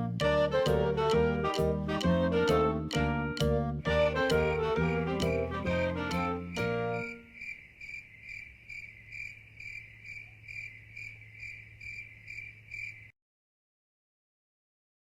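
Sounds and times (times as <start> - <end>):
background music: 0.0 - 7.3
cricket chirping: 3.9 - 13.1.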